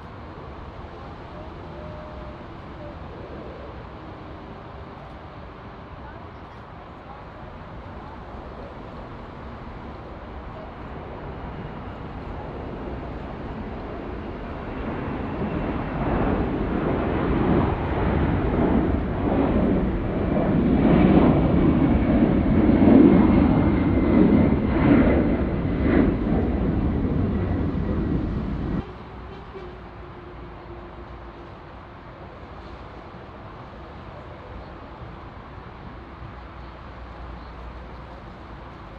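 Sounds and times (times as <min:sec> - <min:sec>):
jet engines roaring: 0:06.6 - 0:36.2.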